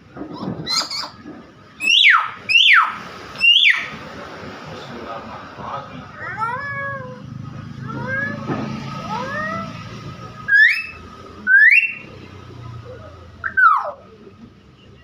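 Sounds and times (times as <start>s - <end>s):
myna whistling calls: 1.8s - 4.0s, 10.4s - 12.1s, 13.4s - 14.1s.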